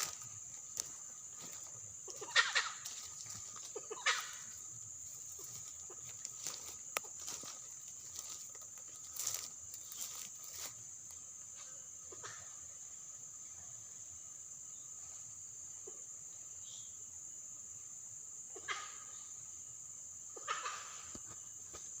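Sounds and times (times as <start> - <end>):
high-pitched insect drone: 0.0 - 11.8.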